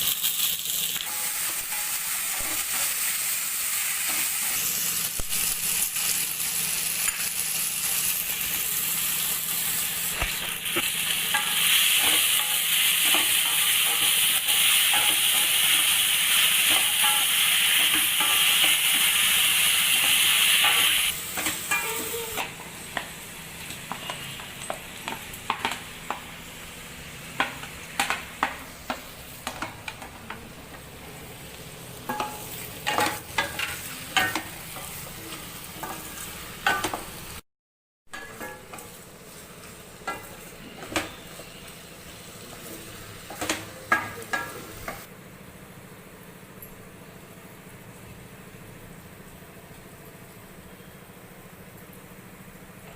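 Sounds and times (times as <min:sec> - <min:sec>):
food sizzling in hot oil: 0:00.0 - 0:30.1, 0:30.8 - 0:37.4.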